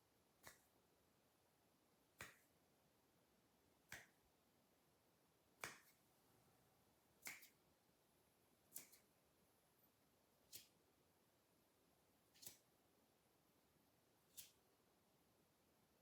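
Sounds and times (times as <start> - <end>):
faint steady hiss: 0.0 - 16.0
finger snaps: 0.4 - 0.7, 2.2 - 2.5, 3.9 - 4.2, 5.6 - 6.0, 7.2 - 7.6, 8.8 - 9.0.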